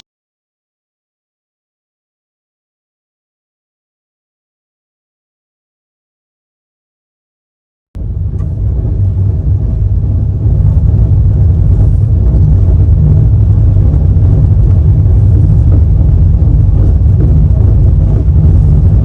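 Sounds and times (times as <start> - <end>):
train rumbling on track: 8.0 - 19.0.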